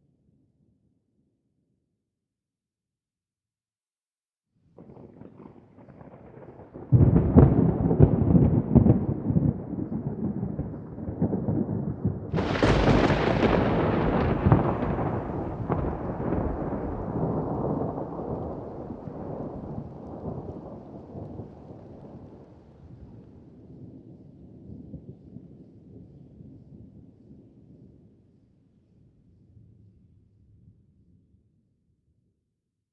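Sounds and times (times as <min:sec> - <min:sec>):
thunder rumbling: 0:04.8 - 0:23.1
sharp thunder crack: 0:05.9 - 0:20.7.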